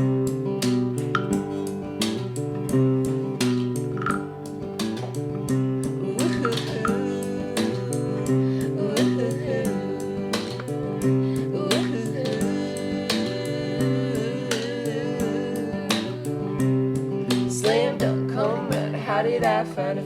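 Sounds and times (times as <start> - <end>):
acoustic guitar strumming chords: 0.0 - 20.0.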